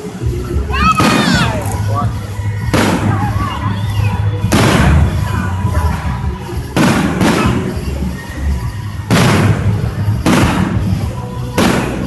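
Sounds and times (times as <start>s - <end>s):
fireworks bangs: 0.0s - 12.0s
steady low rumble: 0.0s - 12.0s.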